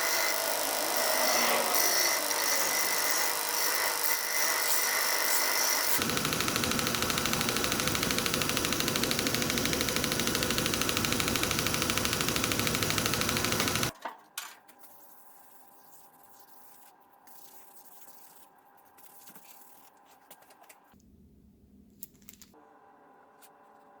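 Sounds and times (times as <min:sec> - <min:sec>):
angle grinder cutting steel: 0:00.0 - 0:13.9.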